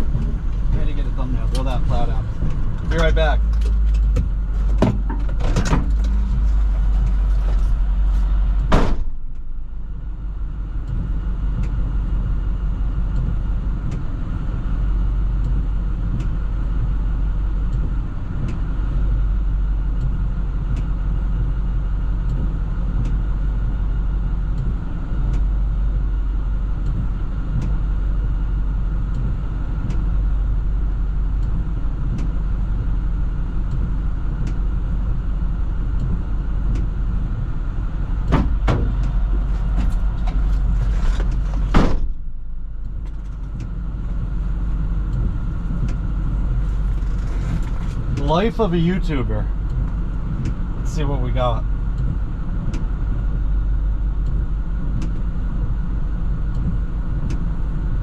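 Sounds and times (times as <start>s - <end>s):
truck engine idling: 0.0s - 58.0s
truck door slamming: 3.6s - 6.8s, 8.6s - 9.3s, 38.2s - 42.4s
faint tick: 11.6s - 11.8s.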